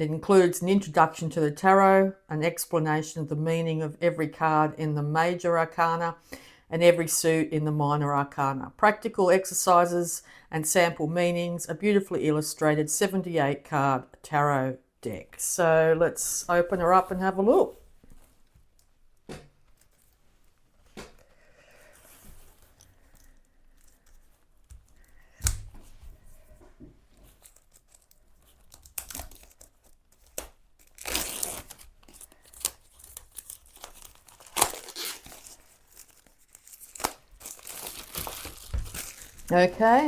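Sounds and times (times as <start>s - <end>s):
plastic shrink-wrap tearing and crinkling: 27.3s - 39.6s.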